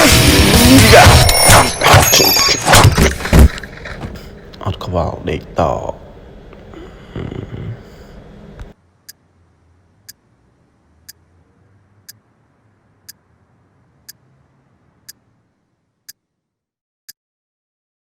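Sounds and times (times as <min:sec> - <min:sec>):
faint low hum: 0:02.9 - 0:16.1.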